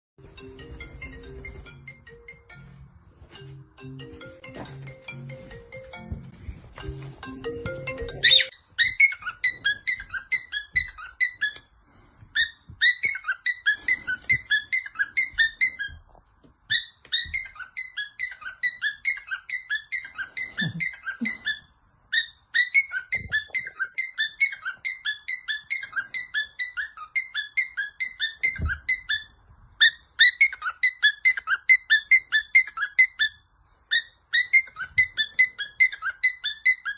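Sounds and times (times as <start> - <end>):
cockatiel beeping chirps: 7.7 - 11.7, 12.4 - 36.9.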